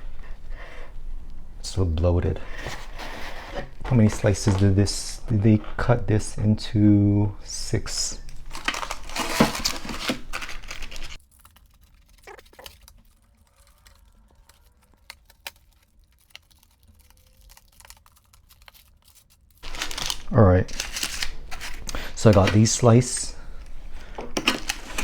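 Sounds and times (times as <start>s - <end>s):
packaging crackling and rustling: 8.2s - 23.1s, 24.0s - 25.0s.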